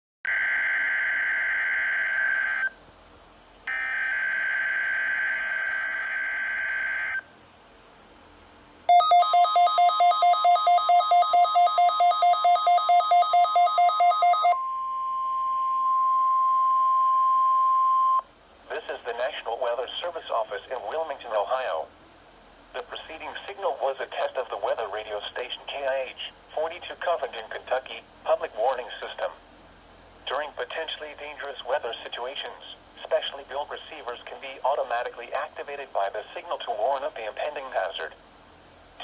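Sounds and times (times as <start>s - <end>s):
steady warning alarm tone: 0.3s - 2.8s, 3.7s - 7.2s, 8.9s - 18.2s
rapid beeping: 8.9s - 14.6s.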